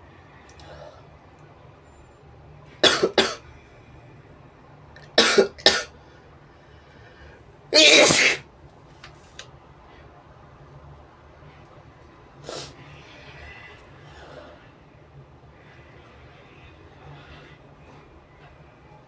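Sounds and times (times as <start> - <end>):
person sneezing: 5.2 - 5.9, 7.8 - 8.4.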